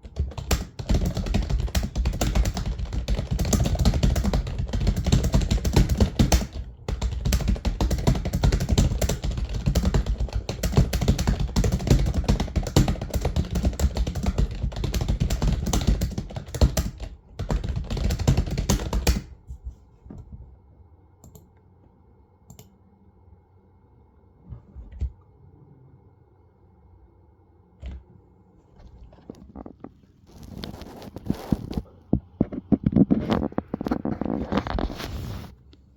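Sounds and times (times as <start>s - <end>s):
fast keyboard typing: 0.0s - 19.4s
faint hum: 0.0s - 35.9s.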